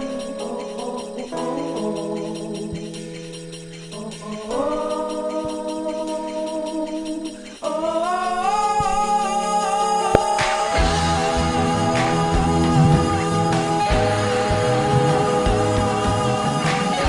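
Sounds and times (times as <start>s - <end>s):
held chords: 0.0s - 17.0s
person singing: 4.0s - 17.0s.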